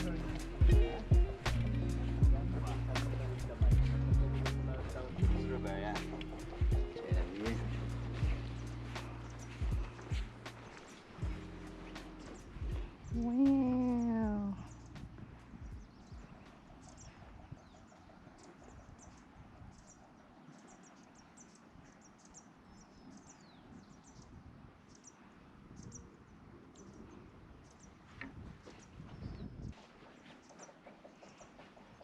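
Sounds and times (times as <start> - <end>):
low rumble: 0.0 - 10.6, 11.2 - 15.8.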